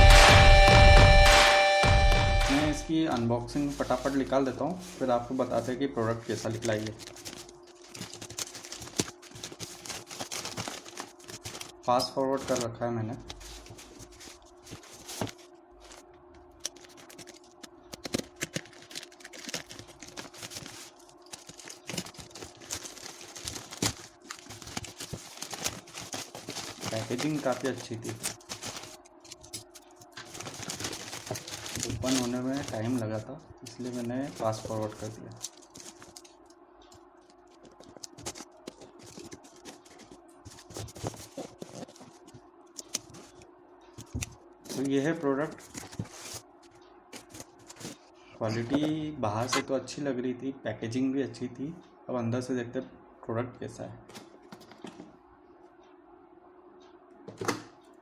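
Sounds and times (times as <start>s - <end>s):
faint steady hum: 0.0s - 58.0s
packaging rustling and crinkling: 2.6s - 43.4s, 44.0s - 46.5s, 47.2s - 48.9s
cardboard box being opened by hand: 30.3s - 33.0s, 37.8s - 42.3s.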